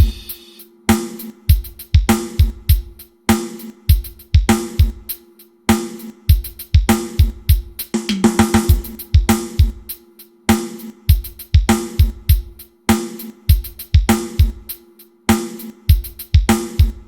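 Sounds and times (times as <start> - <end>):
kick drum: 0.0 - 0.4, 1.5 - 3.1, 3.9 - 5.2, 6.3 - 10.0, 11.1 - 12.7, 13.5 - 14.8, 15.9 - 17.0
hi-hat: 0.0 - 17.0
ringing snare drum: 0.0 - 17.0.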